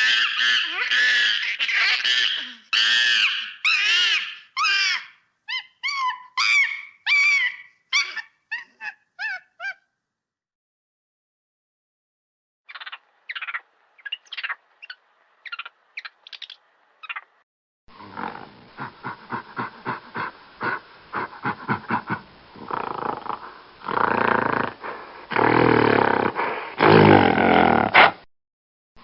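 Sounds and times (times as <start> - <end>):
monkey calls and screams: 0.0 - 9.8, 12.7 - 17.3.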